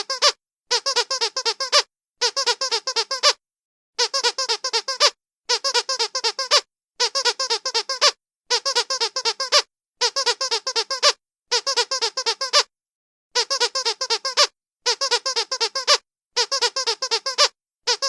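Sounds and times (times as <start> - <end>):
quick high-pitched squeaks: 4.0 - 12.7, 13.4 - 18.0.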